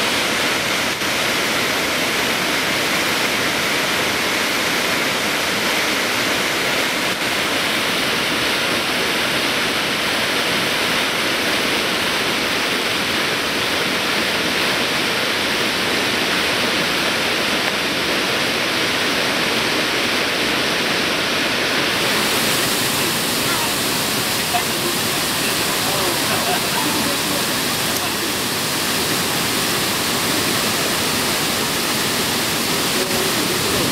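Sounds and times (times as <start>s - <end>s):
waterfall roaring: 0.0s - 33.9s.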